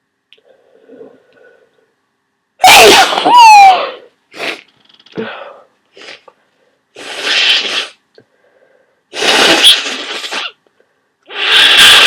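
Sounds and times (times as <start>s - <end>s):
person sneezing loudly: 2.6s - 4.6s.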